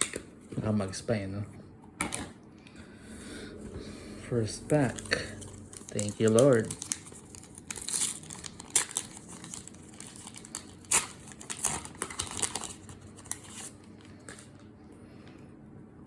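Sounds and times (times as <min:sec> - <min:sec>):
card pack wrapper tearing: 0:04.8 - 0:14.4.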